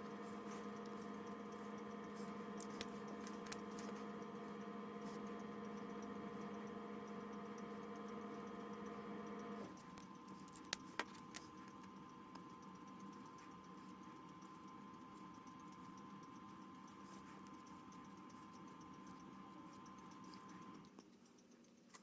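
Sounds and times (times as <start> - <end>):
faint electrical hum: 0.0 - 22.0
light clicks and taps: 0.2 - 4.3.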